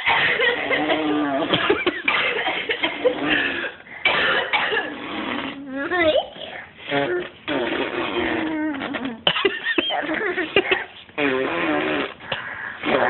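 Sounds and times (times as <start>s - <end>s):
child blowing raspberries: 4.9s - 5.8s, 6.6s - 9.2s, 11.2s - 13.0s
child vocalising or laughing: 7.9s - 11.0s.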